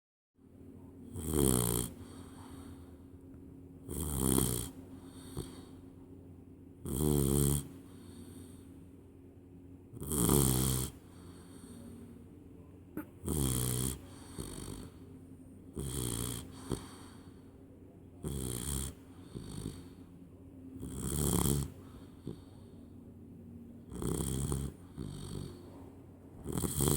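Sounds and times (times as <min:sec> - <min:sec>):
quiet breaths: 0:00.5 - 0:26.9
puppy snoring: 0:01.0 - 0:03.0, 0:03.8 - 0:06.0, 0:06.8 - 0:08.8, 0:09.9 - 0:12.1, 0:13.0 - 0:15.1, 0:15.7 - 0:17.6, 0:18.2 - 0:20.1, 0:20.8 - 0:22.9, 0:23.8 - 0:26.9.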